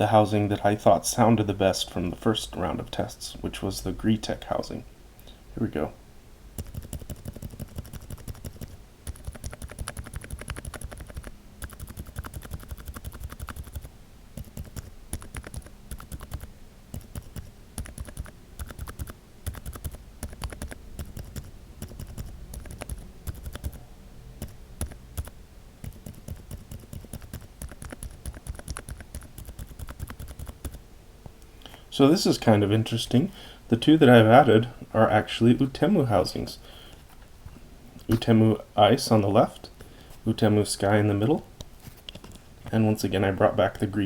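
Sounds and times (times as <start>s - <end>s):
quiet keyboard typing: 6.6s - 23.8s, 24.4s - 30.8s.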